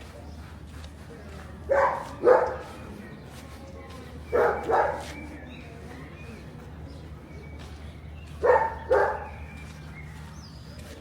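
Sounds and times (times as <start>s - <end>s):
dog barking: 1.7s - 2.7s, 4.3s - 5.1s, 8.4s - 9.4s.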